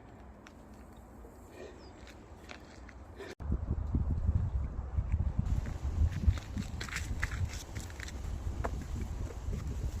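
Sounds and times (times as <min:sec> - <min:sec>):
footsteps on rocky trail: 0:01.8 - 0:03.4, 0:05.1 - 0:10.0.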